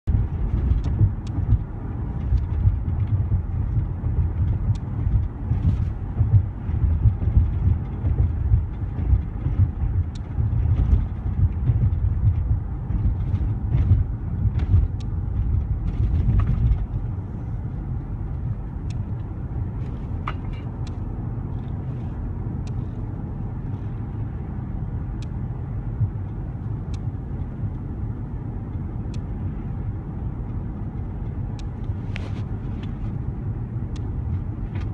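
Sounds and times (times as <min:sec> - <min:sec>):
road and engine rumble: 0:00.0 - 0:34.9.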